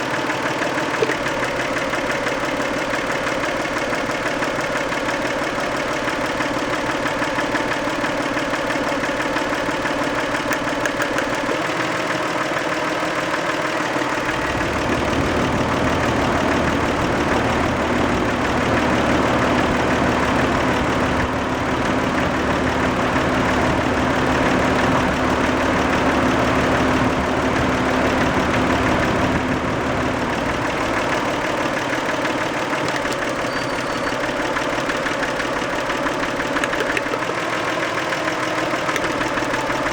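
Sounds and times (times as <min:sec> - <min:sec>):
engine running with rapid knock: 0:00.0 - 0:39.9.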